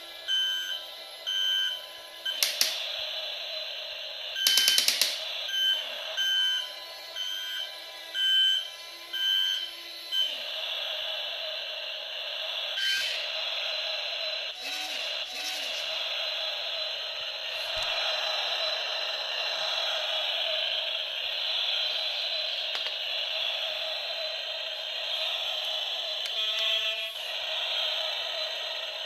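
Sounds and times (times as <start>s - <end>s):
small electric motors whining: 0.0s - 29.0s
toy excavator warning beeps: 0.2s - 2.8s, 4.3s - 10.4s, 24.7s - 27.1s
rapid clicking: 4.4s - 5.2s.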